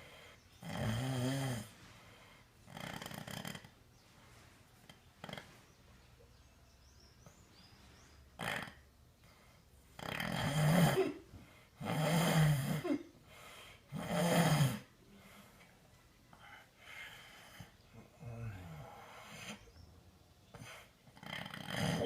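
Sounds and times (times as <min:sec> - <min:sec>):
soft breaths: 0:00.0 - 0:00.6, 0:01.2 - 0:08.4, 0:13.1 - 0:14.0, 0:14.8 - 0:21.2
loud rasping snoring: 0:00.6 - 0:01.8, 0:02.6 - 0:03.8, 0:04.9 - 0:05.6, 0:08.4 - 0:09.0, 0:09.9 - 0:11.2, 0:11.8 - 0:12.9, 0:13.9 - 0:14.9, 0:20.5 - 0:22.0.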